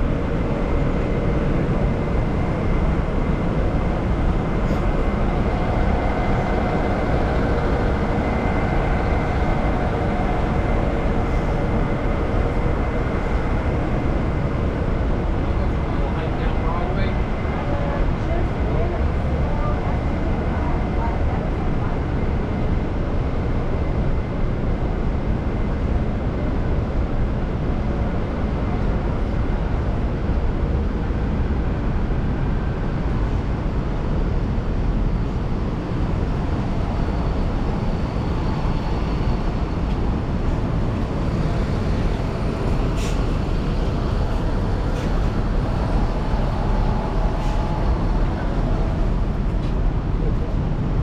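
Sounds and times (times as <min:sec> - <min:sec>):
city traffic noise: 0:00.0 - 0:51.0.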